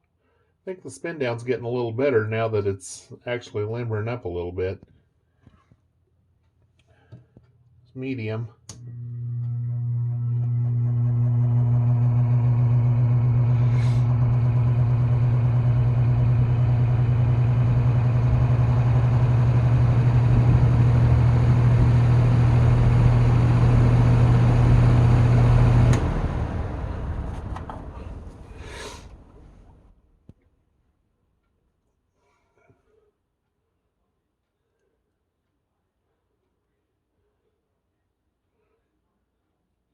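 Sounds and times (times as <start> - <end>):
box fan running: 8.7 - 29.9
fan blades coasting down: 8.7 - 29.9.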